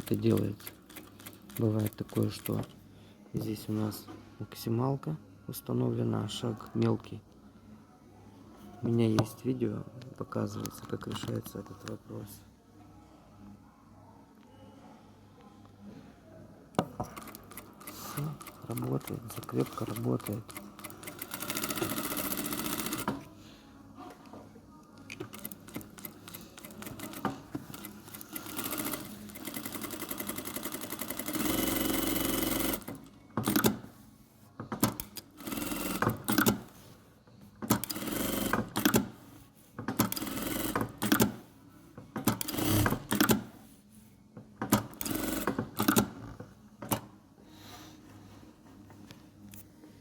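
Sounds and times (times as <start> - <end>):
sewing machine stitching: 0.0 - 2.7, 17.0 - 23.2, 25.2 - 33.8, 42.2 - 43.5, 44.7 - 46.2.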